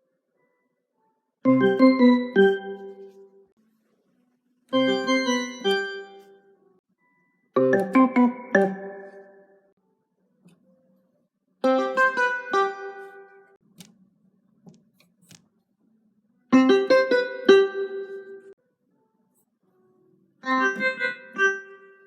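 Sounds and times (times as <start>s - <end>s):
phone notification melody: 1.5s - 3.1s, 7.6s - 9.4s.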